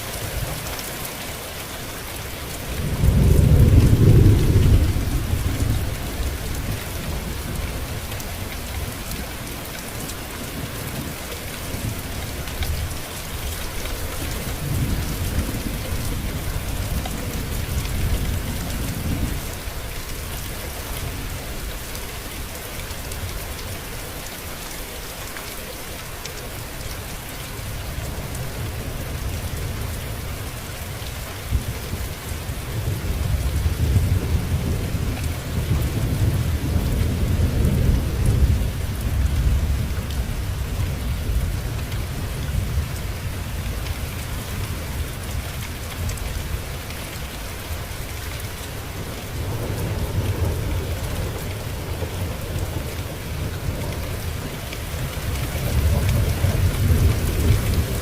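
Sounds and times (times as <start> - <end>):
steady rain falling: 0.0 - 58.0
rolling thunder: 2.8 - 8.0.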